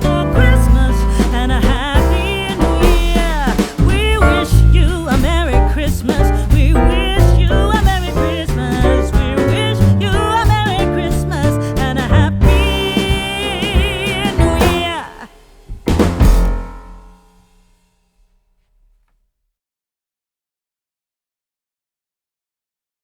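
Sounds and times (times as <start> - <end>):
song with sung melody and bass beat: 0.0 - 15.4.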